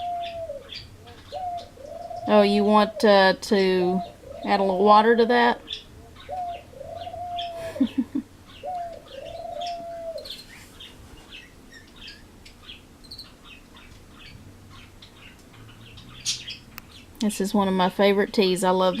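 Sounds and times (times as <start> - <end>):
bird cooing calls: 0.0 - 11.4.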